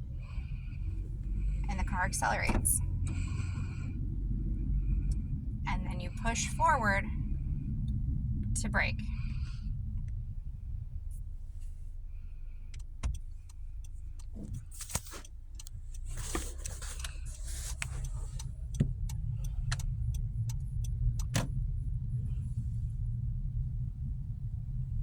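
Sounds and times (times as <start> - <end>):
car engine and road noise: 0.0 - 25.0
sharp clicks and taps: 12.7 - 21.5.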